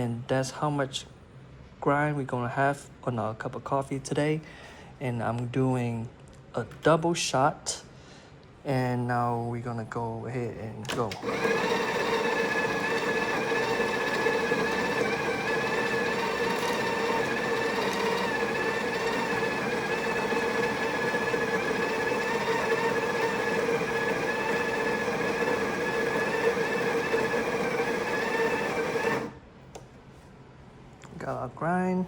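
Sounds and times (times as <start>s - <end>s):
grinder whine: 10.9s - 29.5s
coffee grinder grinding beans: 11.2s - 29.4s.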